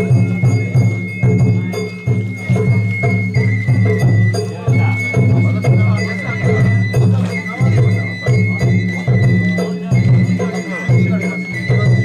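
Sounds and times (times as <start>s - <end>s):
bamboo flute high note: 0.0s - 12.0s
taiko drums beating: 0.0s - 12.0s.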